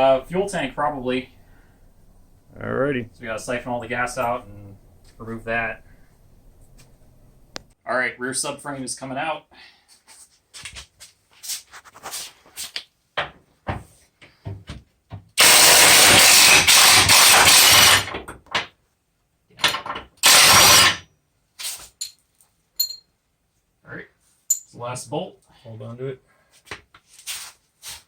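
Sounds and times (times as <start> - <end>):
impact wrench bursts: 0.0 - 7.6, 15.4 - 18.1, 20.2 - 21.0
tools and metal parts clanking: 22.8 - 23.1.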